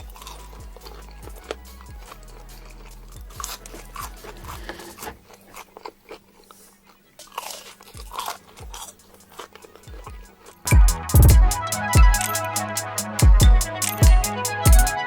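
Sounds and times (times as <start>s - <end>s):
crunchy food being chewed: 0.0s - 10.7s.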